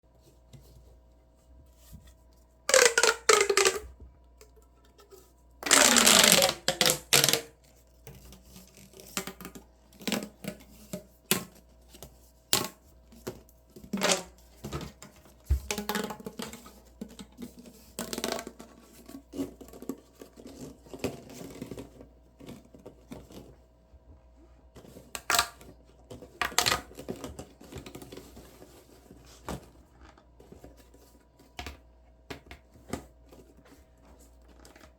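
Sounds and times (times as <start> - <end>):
plastic pop tubes snapping: 2.7 - 3.9, 5.6 - 7.5.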